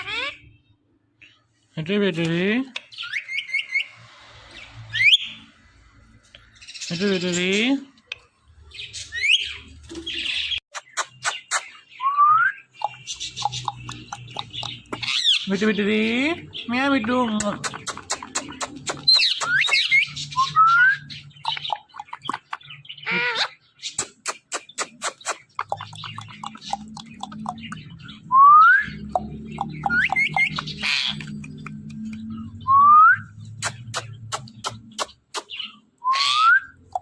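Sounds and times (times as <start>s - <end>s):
parakeet clicking and chatter: 10.1s - 11.8s, 12.7s - 20.4s, 21.1s - 28.2s, 28.9s - 32.6s, 33.4s - 35.8s, 36.8s - 37.0s.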